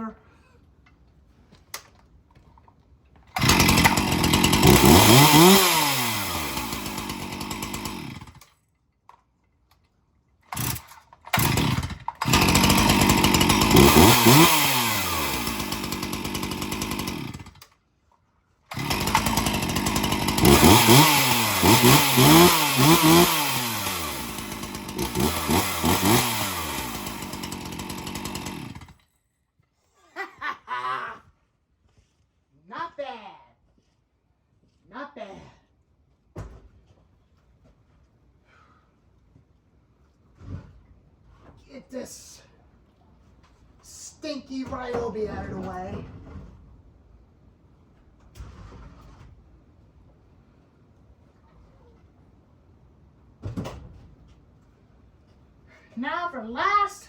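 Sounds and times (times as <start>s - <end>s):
chainsaw revving: 3.4s - 8.4s, 10.6s - 17.6s, 18.7s - 29.0s.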